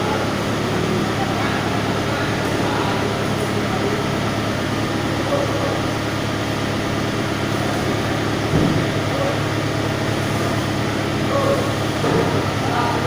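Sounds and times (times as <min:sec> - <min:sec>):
engine idling: 0:00.0 - 0:13.0
short thump: 0:08.5 - 0:09.0.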